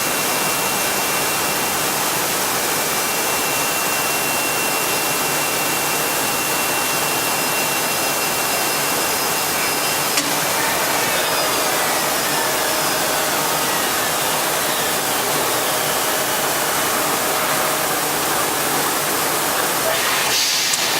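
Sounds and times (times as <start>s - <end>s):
cnc router running: 0.0s - 20.9s
high steady tone: 9.8s - 19.9s.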